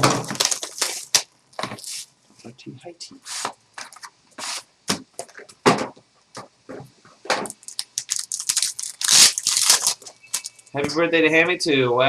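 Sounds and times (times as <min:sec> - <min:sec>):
cards and packaging handled: 0:00.0 - 0:02.1, 0:07.4 - 0:10.8.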